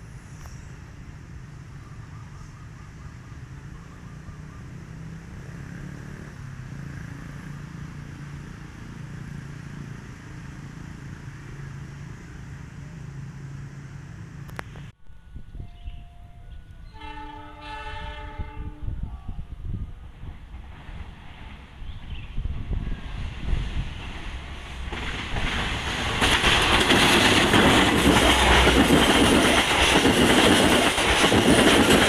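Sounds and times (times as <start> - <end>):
road traffic rumble: 0.0 - 15.3, 20.2 - 32.0.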